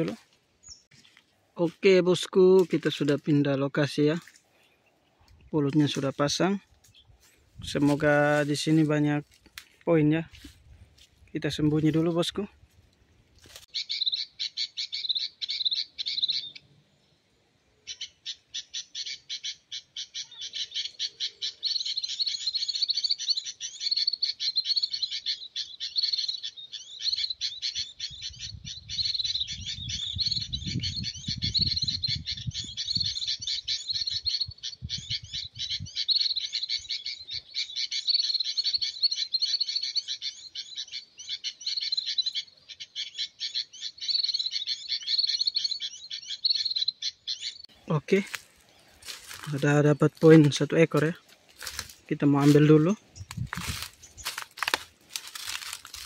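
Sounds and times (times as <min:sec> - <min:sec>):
wind on microphone: 0:28.1 - 0:36.0, 0:53.0 - 0:54.3.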